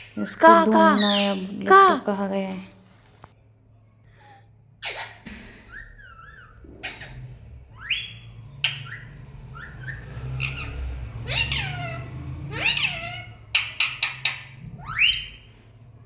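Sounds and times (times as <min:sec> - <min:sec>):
parrot whistling and squawking: 0:00.0 - 0:01.5, 0:04.8 - 0:15.6.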